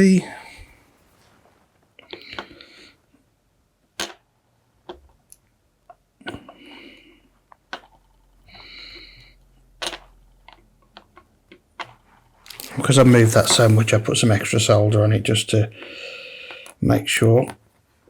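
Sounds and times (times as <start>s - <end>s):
short hissing: 12.6s - 14.0s.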